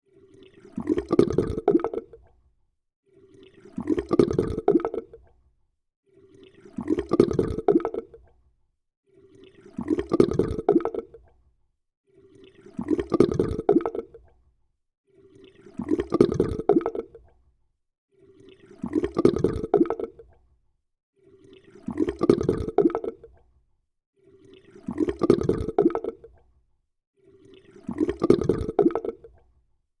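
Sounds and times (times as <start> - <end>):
water gurgling: 0.1 - 2.3, 3.1 - 5.2, 6.1 - 8.2, 9.2 - 11.2, 12.2 - 14.2, 15.2 - 17.2, 18.2 - 20.3, 21.3 - 23.4, 24.3 - 26.4, 27.2 - 29.4.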